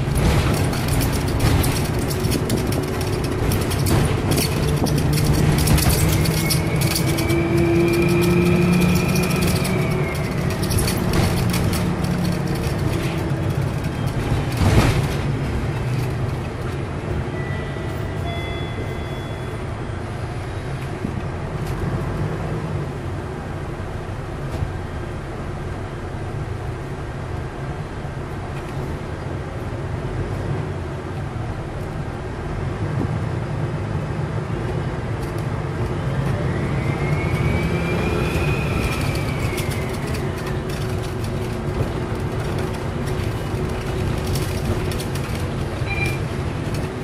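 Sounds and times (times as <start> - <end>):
diesel bus engine under load: 0.0 - 47.0
turbocharger whistle: 36.4 - 39.9.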